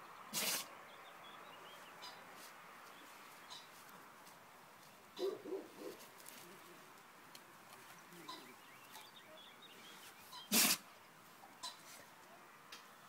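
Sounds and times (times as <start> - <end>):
dog sneezing: 0.3 - 0.7, 10.5 - 10.8.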